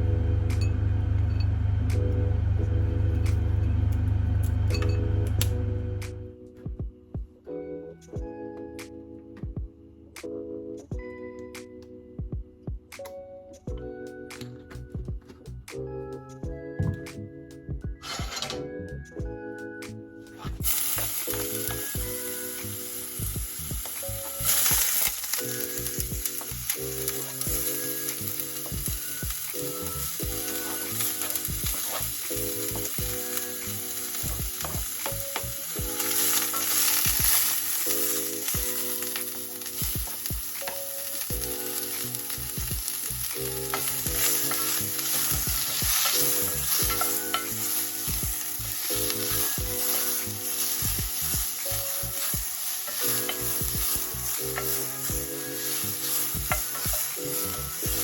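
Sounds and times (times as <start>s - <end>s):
food sizzling in a pan: 18.0s - 18.5s, 20.4s - 58.0s.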